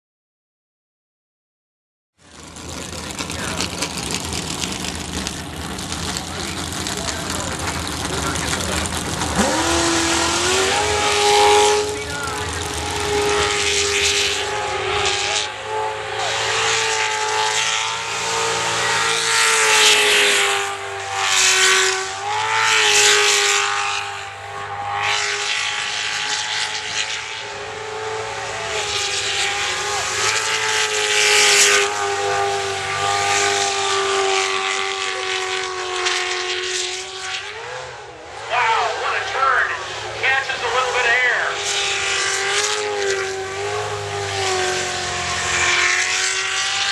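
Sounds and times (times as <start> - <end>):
boat engine at high revs: 2.2 - 46.9.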